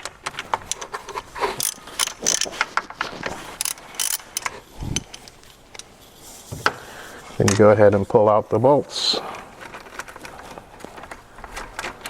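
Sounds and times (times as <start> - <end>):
hand ratchet clicking: 0.4 - 5.9.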